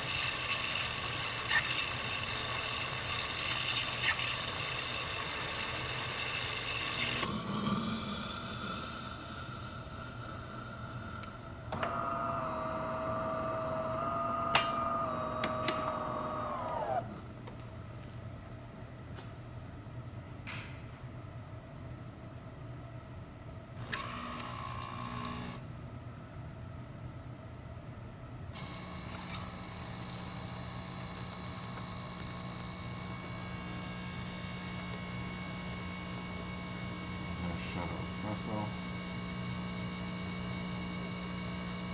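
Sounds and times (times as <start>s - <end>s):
coffee machine motor whining: 0.0s - 17.3s, 23.8s - 25.6s, 28.6s - 41.9s.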